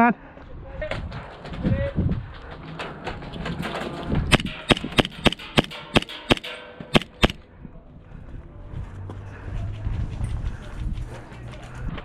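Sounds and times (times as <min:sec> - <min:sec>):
airsoft gun shots: 0:04.3 - 0:07.4.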